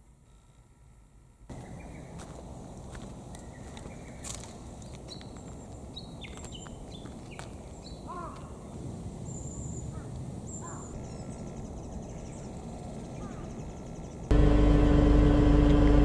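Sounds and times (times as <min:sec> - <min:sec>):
songbirds chirping: 0:01.5 - 0:16.0
low outdoor background hum: 0:09.2 - 0:16.0.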